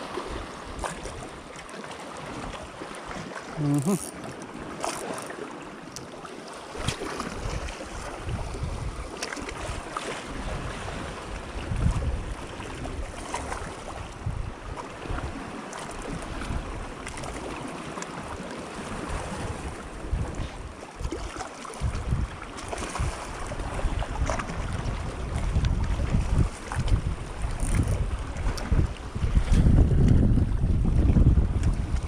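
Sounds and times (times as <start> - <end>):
sea waves: 0.0 - 32.0
wind buffeting the microphone: 6.8 - 17.4, 18.9 - 32.0.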